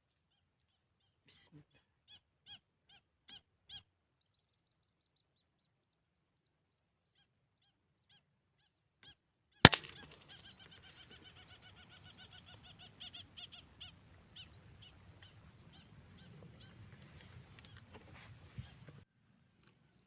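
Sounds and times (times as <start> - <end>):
faint bird calls: 0.1 - 19.1
sharp crack: 9.6 - 10.4
bird chattering call: 9.6 - 16.8.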